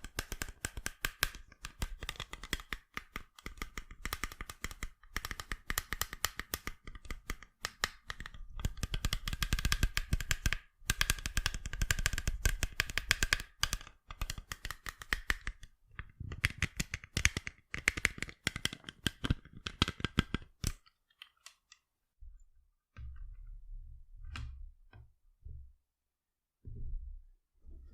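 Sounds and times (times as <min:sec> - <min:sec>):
fingers tapping on sunglasses: 0:00.0 - 0:21.8.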